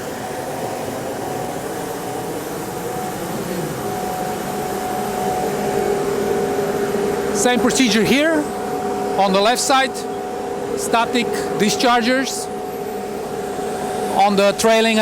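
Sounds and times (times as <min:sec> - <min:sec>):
turbine rush with whine: 0:00.0 - 0:15.0.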